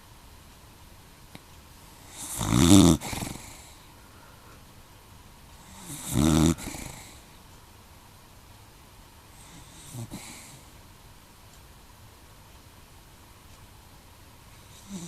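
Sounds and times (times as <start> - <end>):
dog snoring: 2.0 - 3.8, 5.6 - 7.2, 9.4 - 10.7, 14.6 - 15.0.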